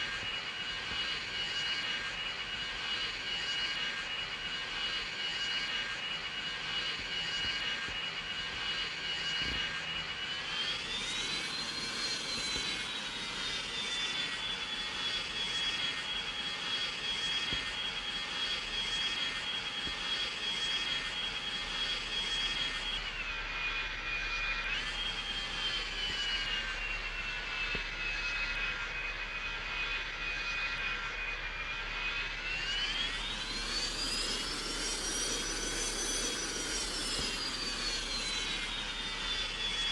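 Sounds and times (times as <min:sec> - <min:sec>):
jet engines whining: 0:00.0 - 0:39.9.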